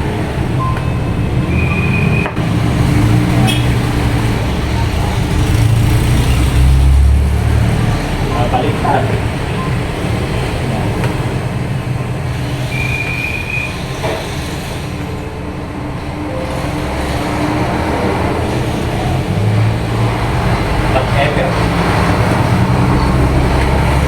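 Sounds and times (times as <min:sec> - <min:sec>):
road traffic rumble: 0:00.0 - 0:24.0
high squeak: 0:12.6 - 0:14.7.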